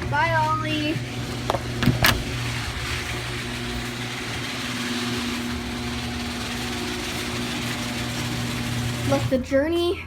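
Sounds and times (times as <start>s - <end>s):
motor running steadily: 0.0s - 9.4s.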